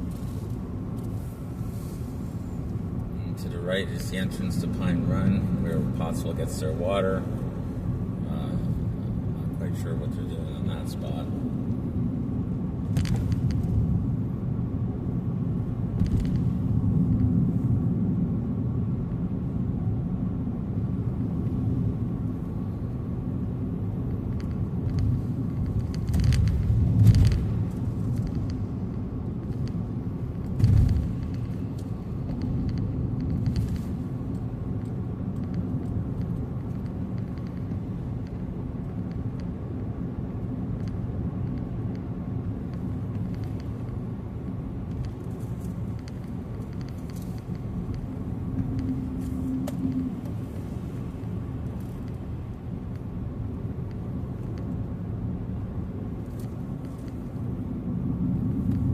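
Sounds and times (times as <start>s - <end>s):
car road and engine rumble: 0.0s - 58.9s.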